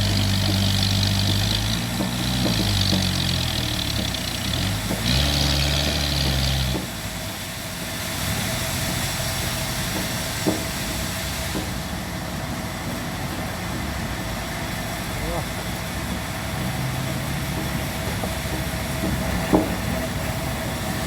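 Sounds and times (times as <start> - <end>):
sawmill engine running: 0.0 - 21.0.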